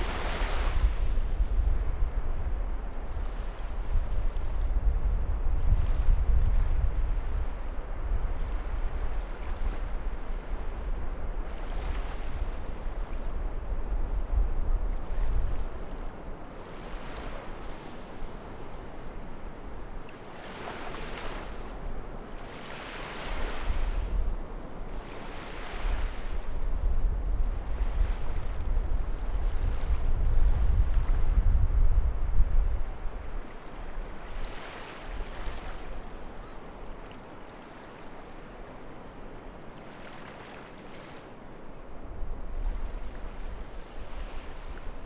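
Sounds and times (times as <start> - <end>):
waves breaking: 0.0 - 3.8, 20.0 - 26.6, 32.8 - 45.0.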